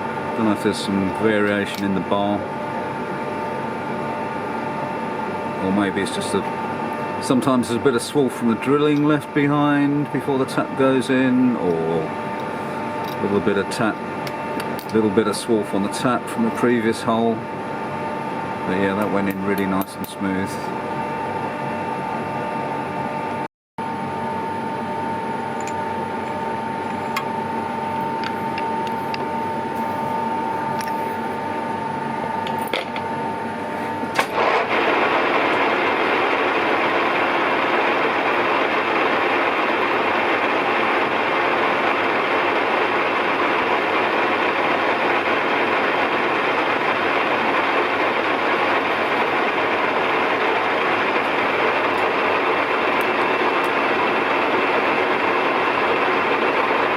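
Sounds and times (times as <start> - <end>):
lathe whining: 24.5 - 56.9
rough machine noise: 33.8 - 56.9.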